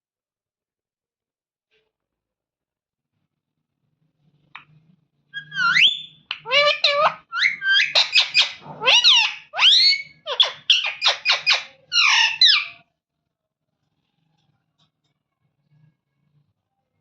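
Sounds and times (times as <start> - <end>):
parrot chattering calls: 5.4 - 12.8.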